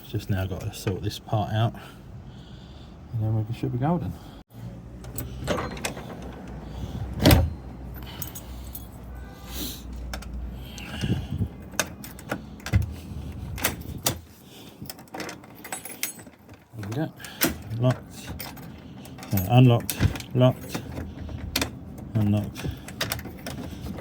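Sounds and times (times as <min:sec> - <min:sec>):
keys jangling: 0:07.9 - 0:09.2, 0:09.9 - 0:24.0
metal lock clicks and knocks: 0:11.0 - 0:14.3, 0:14.9 - 0:24.0.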